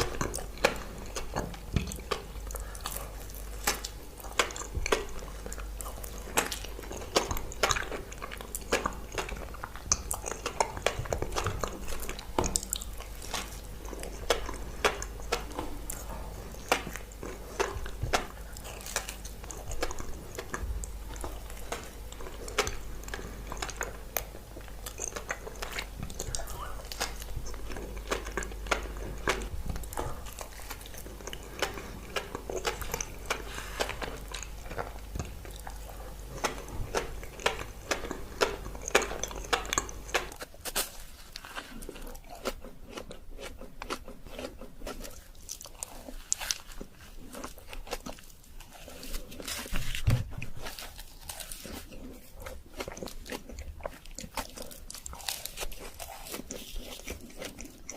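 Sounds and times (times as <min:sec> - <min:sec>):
biting and chewing: 0:00.0 - 0:57.9
low steady hum: 0:00.0 - 0:57.9.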